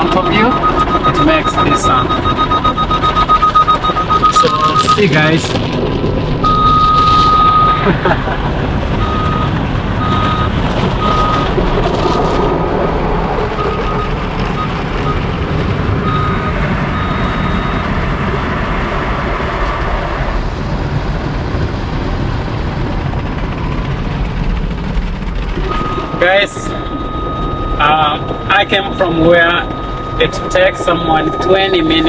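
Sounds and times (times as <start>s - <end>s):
parking sensor beeping: 0.0s - 5.4s, 6.4s - 7.9s, 9.0s - 12.8s, 13.4s - 18.4s, 25.6s - 32.0s.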